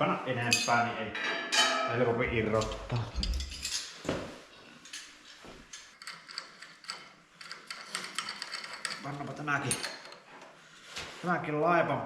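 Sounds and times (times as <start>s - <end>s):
metal clicks and clinks: 5.7s - 10.2s.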